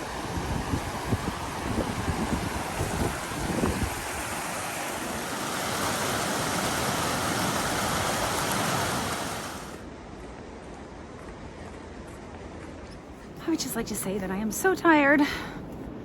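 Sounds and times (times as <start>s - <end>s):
strong wind rushing: 0.0s - 9.8s
wind buffeting microphone: 0.0s - 12.6s.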